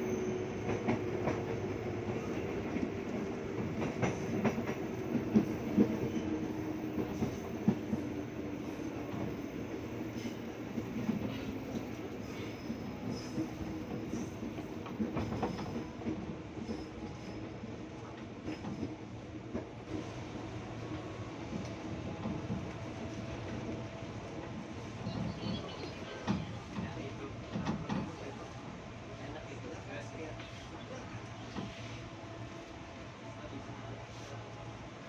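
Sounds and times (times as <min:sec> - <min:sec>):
electric train rumbling on track: 0:00.0 - 0:35.0
train wheels knocking: 0:02.6 - 0:06.1.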